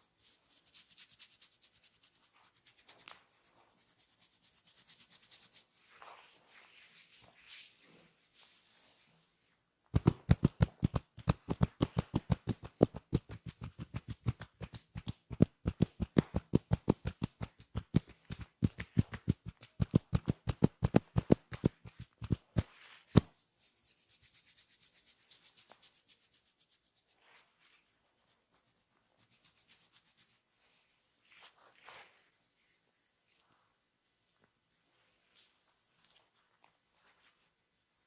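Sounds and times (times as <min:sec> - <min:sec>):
soft hissy rubbing: 0:00.0 - 0:09.6, 0:22.6 - 0:37.8
hands rubbing and patting skin: 0:00.2 - 0:08.9, 0:09.9 - 0:33.5.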